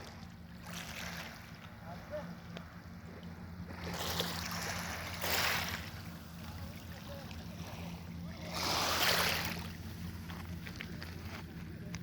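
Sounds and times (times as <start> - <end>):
sea water rushing and splashing: 0.0 - 11.7
steady low hum: 0.0 - 12.0.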